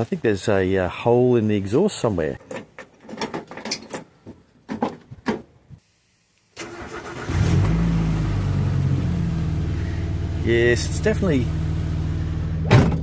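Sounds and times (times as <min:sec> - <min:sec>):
car engine starting and idling: 0:06.6 - 0:13.0.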